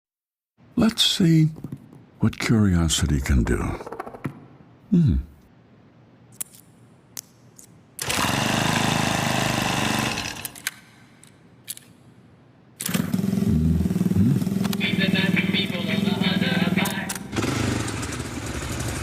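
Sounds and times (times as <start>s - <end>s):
tone sliding down in pitch: 13.6s - 14.4s.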